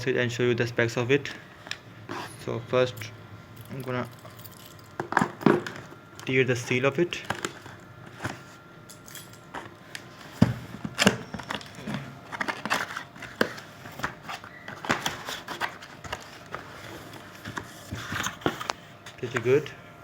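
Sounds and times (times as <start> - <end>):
packaging crinkles and scrapes: 7.2 - 8.7, 9.5 - 19.6.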